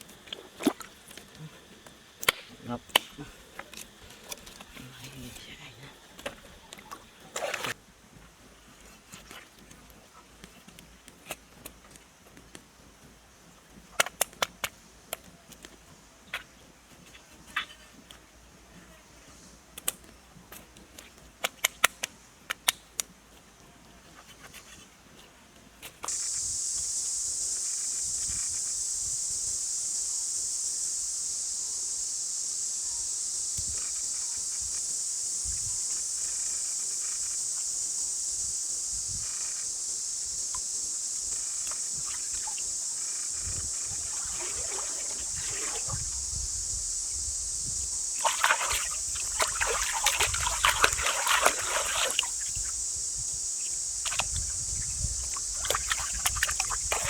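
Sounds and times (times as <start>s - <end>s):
high-pitched insect chorus: 0.0s - 7.8s, 26.0s - 57.0s
quiet outdoor ambience: 0.0s - 57.0s
sharp clicks and snaps: 2.2s - 4.6s, 19.8s - 20.1s, 21.0s - 23.1s.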